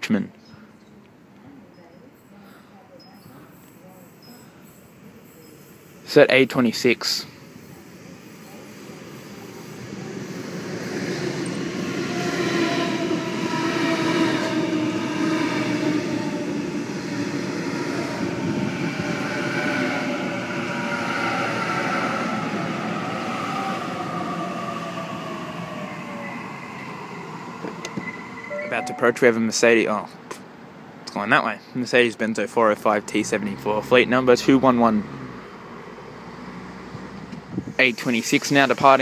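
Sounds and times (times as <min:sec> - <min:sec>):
train wheels rumbling: 0:36.9 - 0:39.0.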